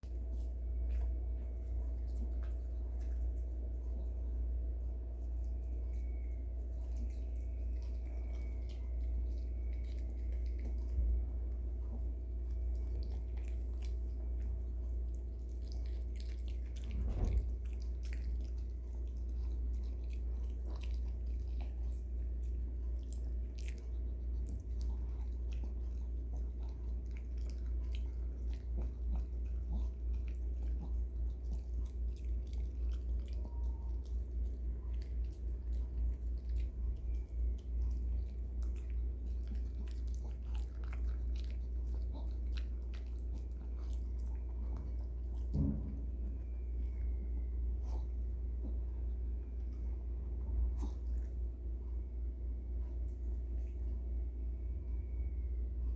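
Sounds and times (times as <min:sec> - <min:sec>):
dog chewing crunchy food: 0:00.0 - 0:54.0
low hum: 0:00.0 - 0:55.9.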